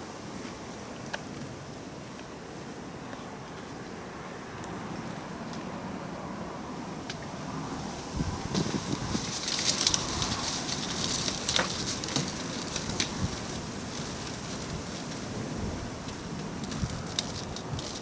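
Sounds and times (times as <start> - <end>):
cats scuffling: 7.7 - 18.0.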